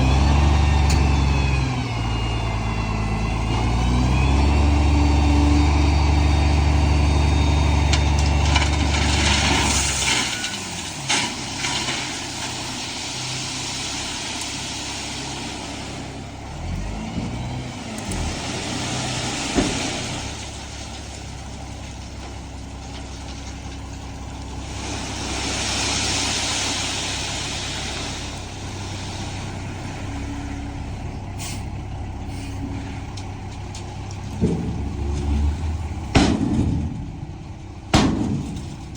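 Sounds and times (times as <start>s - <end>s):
heavy truck engine running: 0.0s - 38.9s
air brake hiss: 31.4s - 31.7s.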